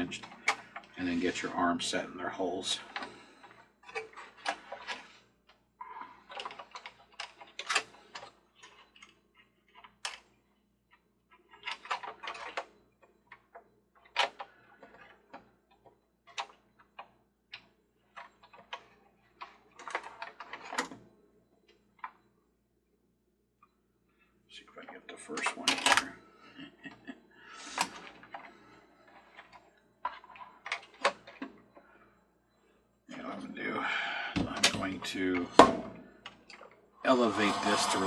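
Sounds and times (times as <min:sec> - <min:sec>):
metal and plastic parts clicking: 0:05.8 - 0:10.3, 0:10.9 - 0:21.0, 0:25.3 - 0:26.1, 0:27.7 - 0:31.6.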